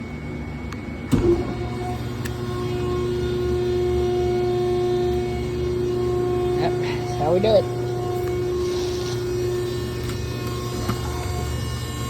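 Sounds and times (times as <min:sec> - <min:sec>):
hydraulic power unit humming: 0:00.0 - 0:12.0.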